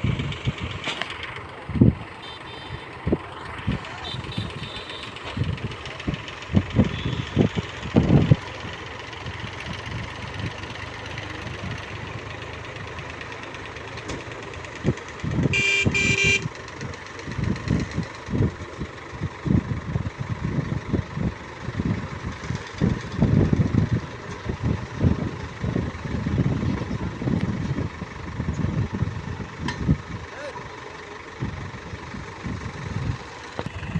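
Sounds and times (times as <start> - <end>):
heavy machinery engines running: 0.0 - 33.9
vehicle horn blasts: 2.2 - 5.5, 6.8 - 7.5, 15.4 - 16.5.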